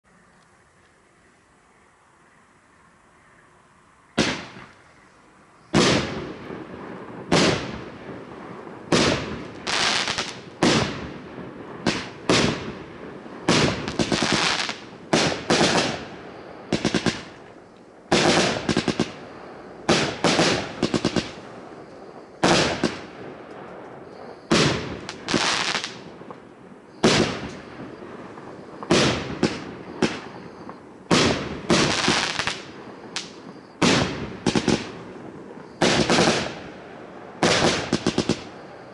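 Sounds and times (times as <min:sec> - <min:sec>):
firework battery firing: 0:04.2 - 0:04.8, 0:05.7 - 0:38.9
bursting firework shells: 0:13.4 - 0:36.7, 0:37.4 - 0:38.9.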